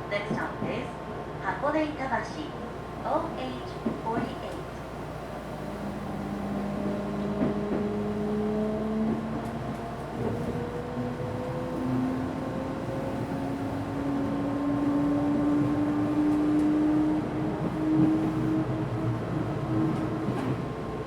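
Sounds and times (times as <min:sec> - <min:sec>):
train running noise: 0:02.7 - 0:21.0.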